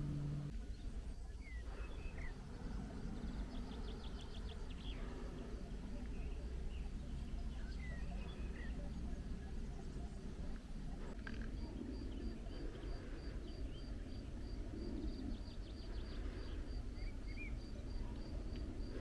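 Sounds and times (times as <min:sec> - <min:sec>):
steady low rumble: 0:00.0 - 0:01.0.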